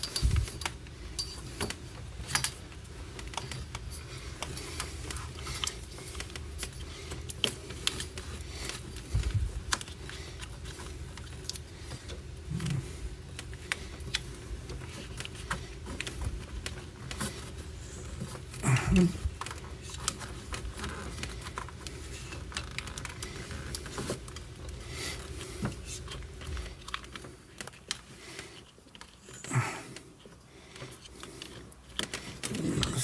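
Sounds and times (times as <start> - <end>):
plastic cable strips clicking and rattling: 0.0 - 33.0.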